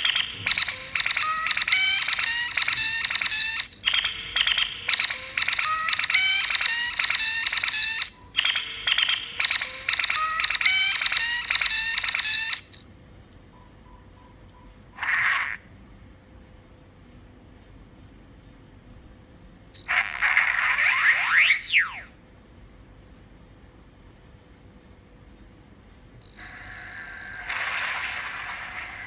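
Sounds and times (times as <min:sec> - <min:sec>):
electronic pulsing beep tones: 0:00.0 - 0:12.8.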